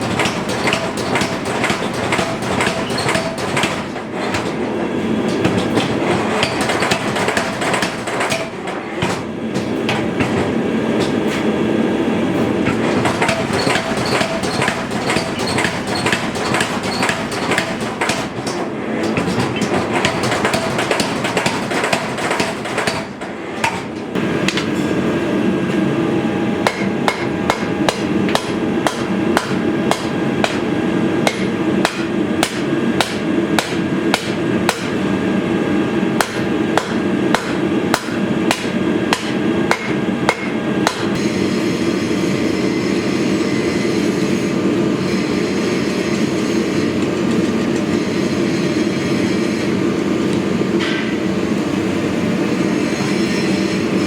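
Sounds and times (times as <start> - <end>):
hammer striking steel on anvil: 0.0 - 4.6, 13.0 - 24.9, 26.6 - 35.0, 36.2 - 41.4.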